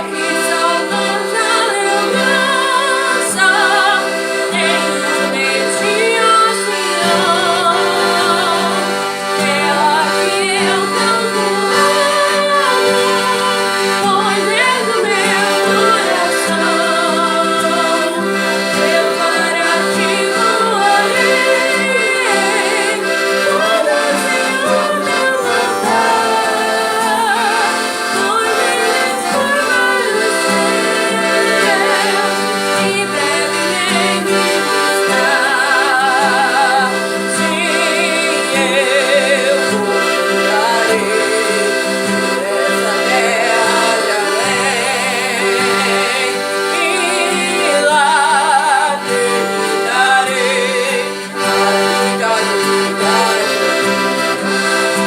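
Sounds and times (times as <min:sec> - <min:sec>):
accordion playing a tune: 0:00.0 - 0:55.0.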